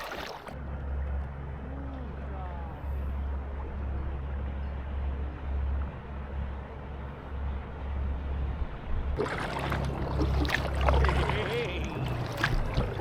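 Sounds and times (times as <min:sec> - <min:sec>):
water splashing against kayak hull: 0:00.0 - 0:00.6, 0:09.2 - 0:13.0
steady low rumble: 0:00.5 - 0:13.0.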